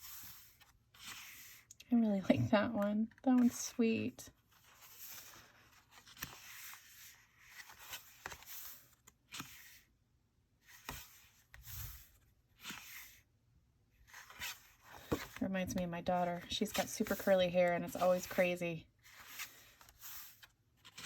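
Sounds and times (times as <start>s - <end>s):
paper pages rustling: 0.0s - 1.7s, 4.4s - 9.9s, 14.0s - 21.0s.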